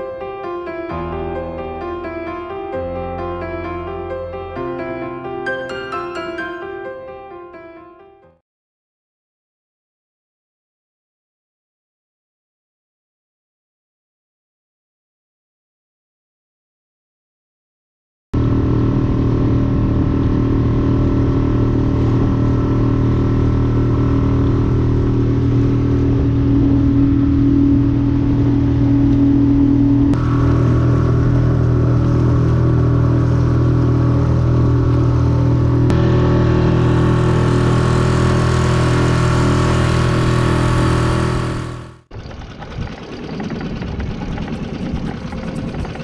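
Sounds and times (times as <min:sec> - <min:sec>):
engine running steadily: 0:18.4 - 0:46.0.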